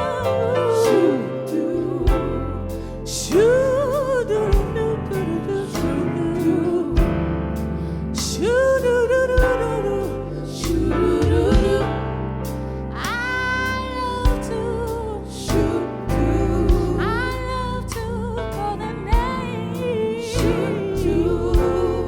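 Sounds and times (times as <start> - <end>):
person singing gospel: 0.0 - 12.2, 12.9 - 22.0
bass: 0.0 - 22.0
drum beat: 11.3 - 11.9.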